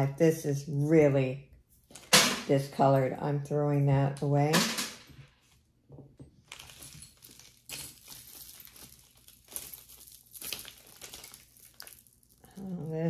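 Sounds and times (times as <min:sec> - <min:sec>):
jewelry rustling: 0:05.2 - 0:13.0.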